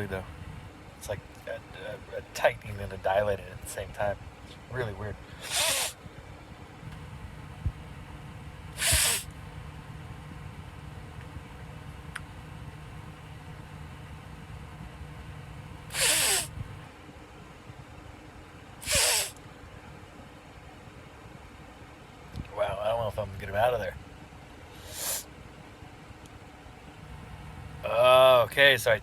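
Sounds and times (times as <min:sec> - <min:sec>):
man sneezing: 0:18.8 - 0:19.3.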